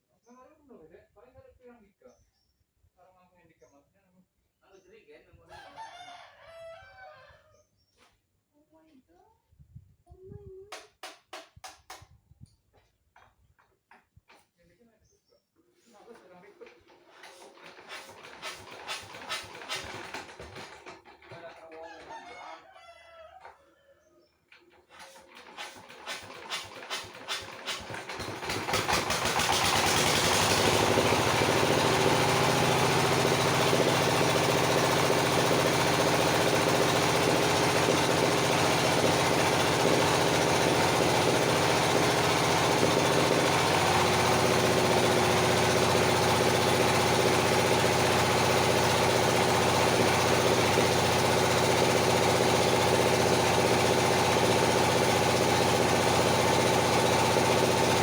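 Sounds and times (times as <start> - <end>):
sawmill engine starting: 16.1 - 22.1, 24.5 - 58.0.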